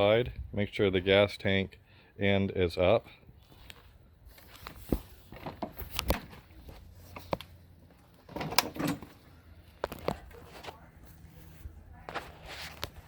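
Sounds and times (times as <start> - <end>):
lawn mower knocks and clunks: 8.3 - 9.2.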